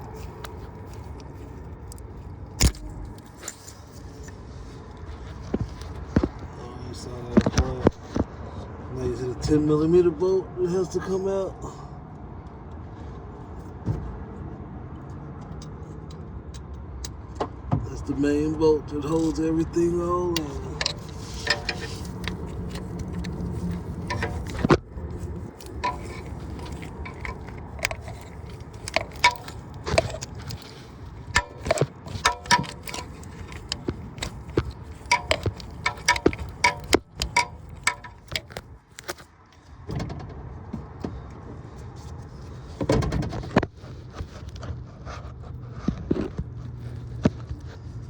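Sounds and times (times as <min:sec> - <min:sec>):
steady low hum: 0:00.0 - 0:08.2, 0:18.8 - 0:39.2
hand tools clicking on metal: 0:20.4 - 0:39.2.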